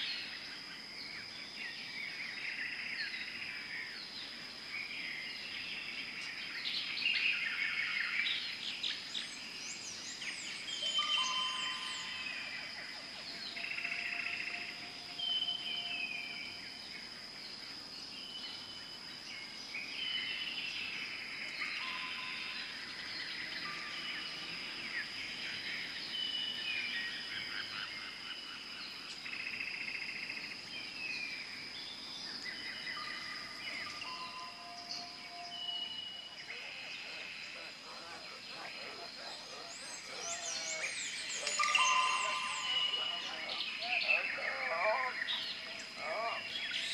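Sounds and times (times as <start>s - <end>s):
high-pitched insect drone: 10.4s - 16.8s, 32.9s - 46.9s
birds calling: 32.8s - 46.9s.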